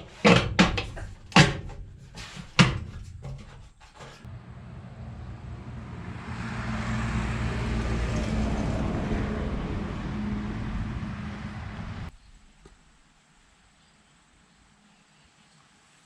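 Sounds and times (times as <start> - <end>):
vehicle driving by: 4.3 - 12.1.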